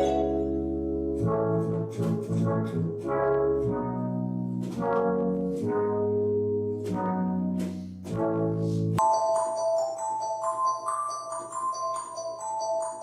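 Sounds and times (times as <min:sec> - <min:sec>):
synthesizer brass chords: 0:00.0 - 0:09.0.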